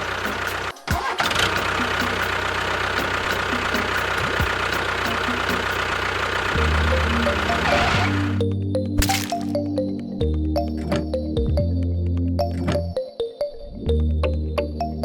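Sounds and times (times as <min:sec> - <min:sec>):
small motor running with rattle: 0:00.0 - 0:08.3.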